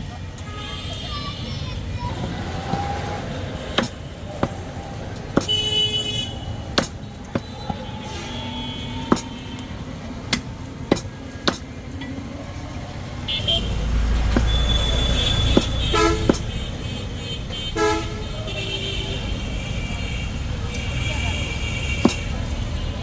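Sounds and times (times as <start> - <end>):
passing vehicle rumble: 0.0 - 23.0
street traffic noise: 0.0 - 23.0
vehicle horn toots: 5.4 - 9.9, 13.3 - 23.0
sharp clicks and knocks: 6.7 - 7.8, 10.3 - 12.2, 15.5 - 16.6, 22.0 - 22.6.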